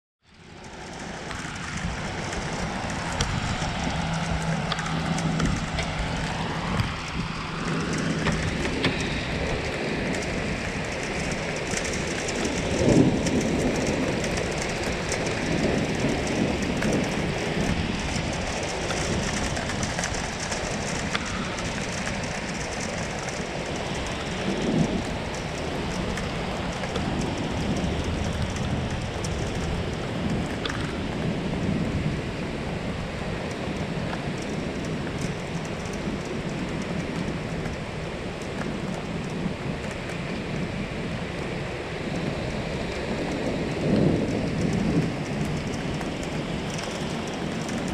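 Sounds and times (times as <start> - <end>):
steady rain: 0.2 - 47.9
thunder rolling: 0.6 - 37.7, 39.1 - 47.9.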